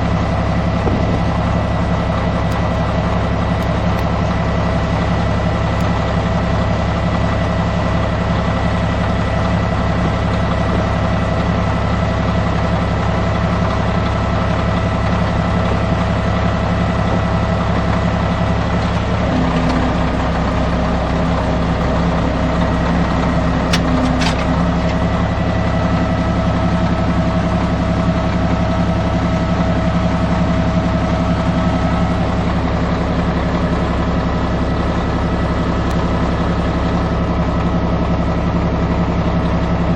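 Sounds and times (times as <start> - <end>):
diesel engine running: 0.0 - 39.9
sharp clicks: 23.6 - 25.0.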